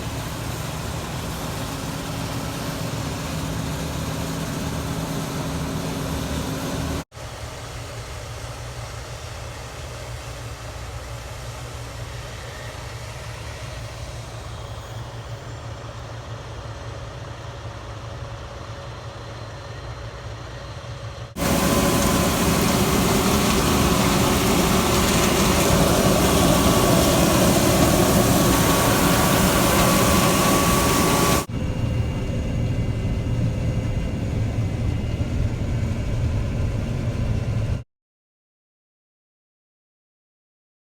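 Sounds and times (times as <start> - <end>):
machine with steady whine: 0.0 - 37.8
machinery engine rumble: 18.6 - 37.8.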